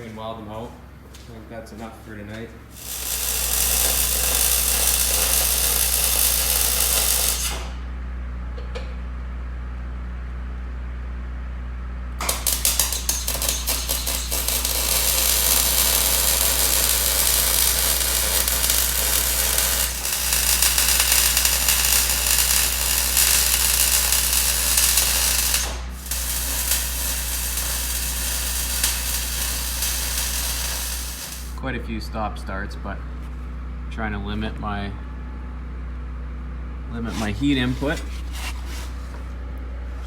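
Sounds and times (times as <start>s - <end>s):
welding arc crackling: 2.7s - 7.8s, 12.2s - 31.6s.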